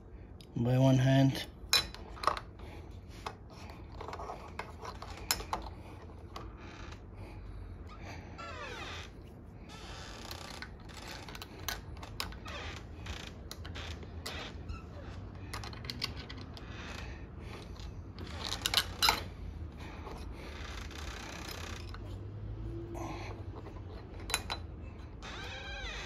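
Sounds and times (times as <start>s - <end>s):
lock parts clicking and rattling: 1.7s - 2.6s, 3.2s - 6.5s, 15.5s - 16.6s, 17.6s - 19.4s, 23.6s - 25.4s.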